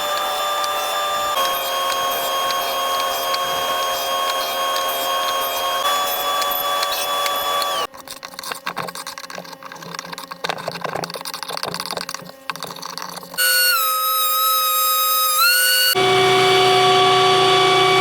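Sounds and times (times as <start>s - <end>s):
power tool whining: 0.0s - 7.9s, 12.0s - 18.0s.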